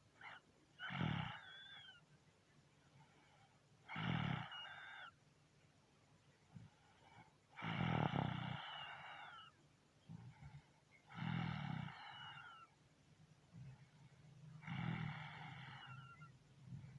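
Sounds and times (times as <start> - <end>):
person snoring loudly: 7.6 - 9.3, 11.1 - 12.3, 14.6 - 16.0.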